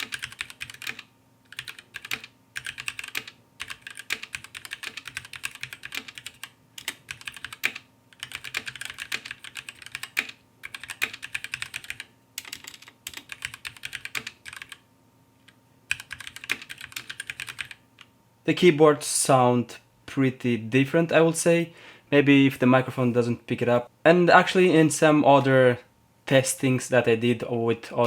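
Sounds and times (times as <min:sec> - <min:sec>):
fast mechanical keyboard typing: 0:00.0 - 0:14.8, 0:15.9 - 0:17.8.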